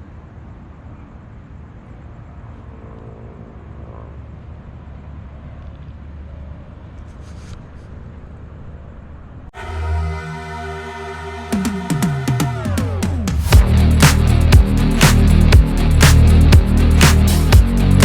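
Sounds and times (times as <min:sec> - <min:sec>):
low outdoor rumble: 0:04.1 - 0:18.0
loud electronic dance music: 0:09.6 - 0:18.0.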